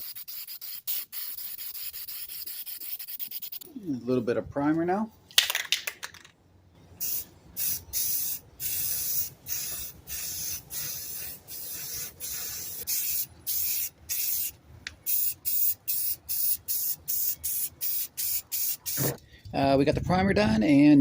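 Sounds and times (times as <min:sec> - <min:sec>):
aerosol can spraying hiss: 0:00.0 - 0:03.6, 0:07.0 - 0:14.5, 0:15.1 - 0:19.2.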